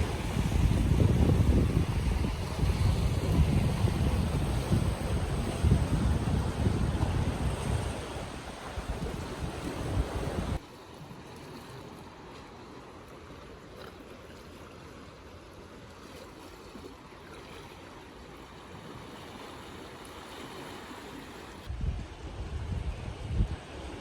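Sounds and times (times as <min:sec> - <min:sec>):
wind buffeting microphone: 0:00.0 - 0:10.6, 0:21.7 - 0:24.0
sea waves on rocky shore: 0:00.0 - 0:22.6.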